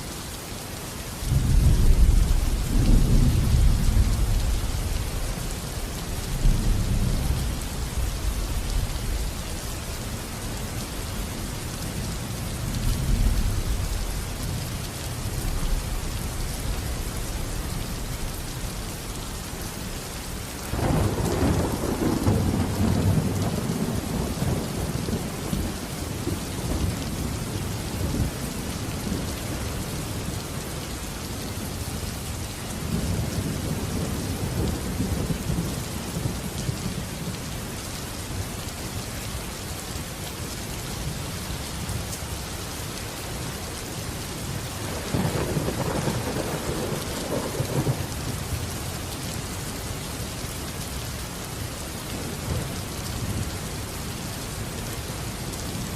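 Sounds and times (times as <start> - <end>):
rolling thunder: 44.8 - 48.1.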